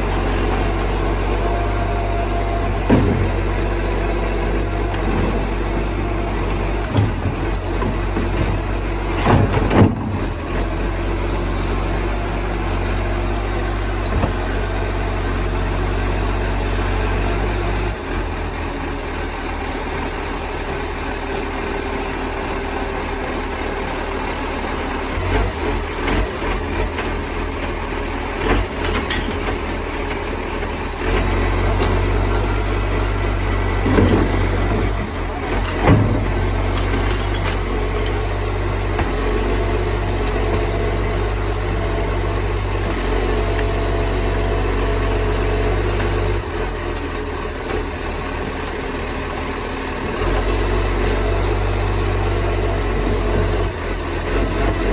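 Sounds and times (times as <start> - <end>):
diesel engine with exhaust leak: 0.0 - 54.9
short knocks and bangs: 1.9 - 10.6.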